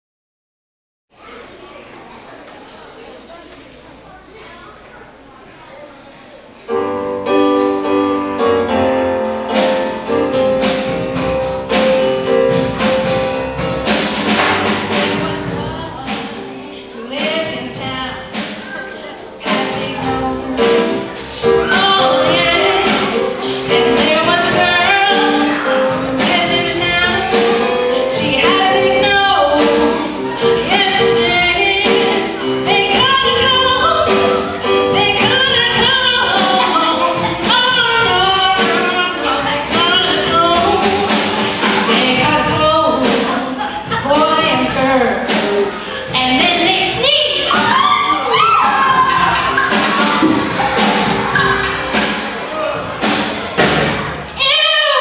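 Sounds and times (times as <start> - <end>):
held instrumental chords: 6.7 - 54.7
voices singing: 14.2 - 53.6.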